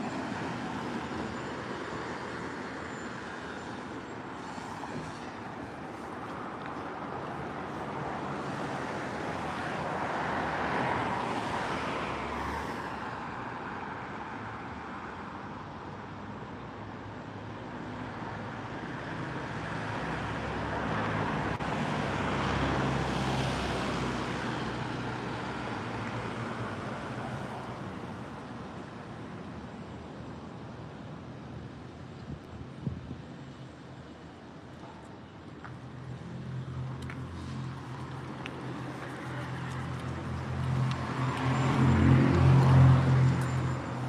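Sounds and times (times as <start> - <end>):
vehicles passing: 0.0 - 44.0.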